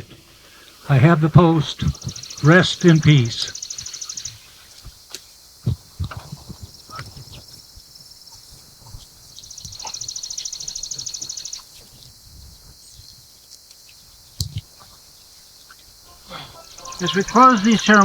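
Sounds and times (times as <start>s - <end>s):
faint outdoor background noise: 0.0s - 18.0s
high rapid dry trill: 16.1s - 18.0s.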